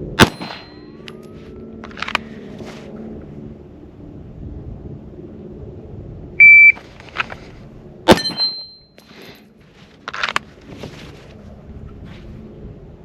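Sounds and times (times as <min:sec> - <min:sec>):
pistol shot: 0:00.2 - 0:00.8
shot timer beep: 0:06.4 - 0:06.8.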